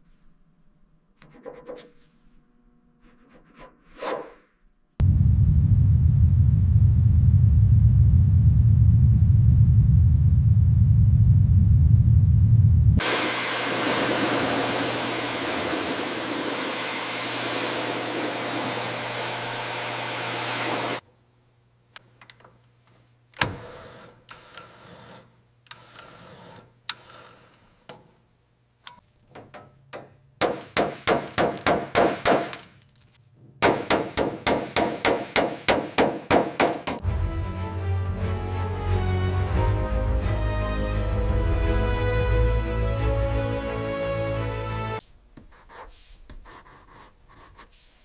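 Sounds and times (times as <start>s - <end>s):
power tool running: 13.0s - 21.0s, 30.4s - 32.7s, 33.6s - 37.0s
rapid hammer strikes: 29.4s - 32.8s, 33.6s - 37.0s
knocks and clinks: 29.4s - 32.9s.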